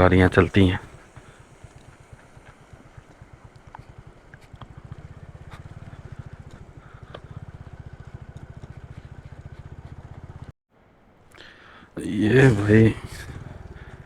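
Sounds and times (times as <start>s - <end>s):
faint clicks: 0.0s - 10.5s
motorcycle engine running: 0.0s - 10.6s, 11.4s - 14.0s.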